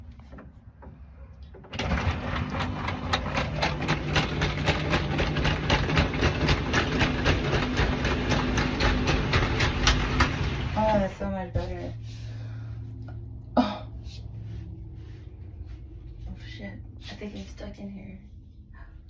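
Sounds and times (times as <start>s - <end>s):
electric motor humming and clicking: 1.7s - 10.8s.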